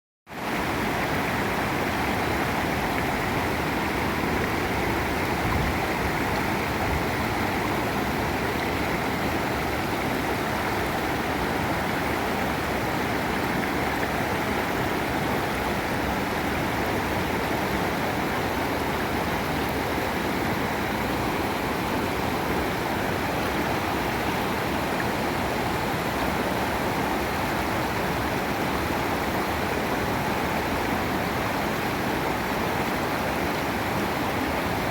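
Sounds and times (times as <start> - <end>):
waterfall rushing: 0.3 - 34.9.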